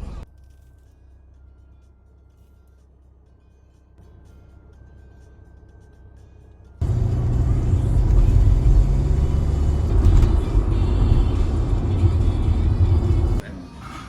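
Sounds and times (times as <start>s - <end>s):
loud low rumble: 6.8s - 13.4s.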